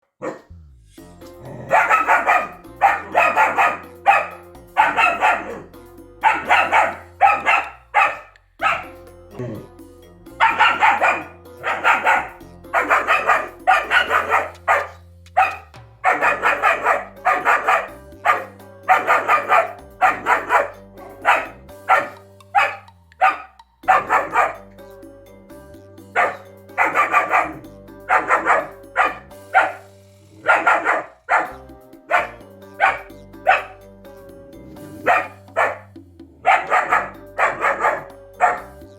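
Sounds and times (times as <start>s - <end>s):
puppy barking: 0.0s - 0.5s, 1.5s - 9.0s, 10.4s - 24.7s, 26.1s - 33.8s, 34.9s - 38.8s.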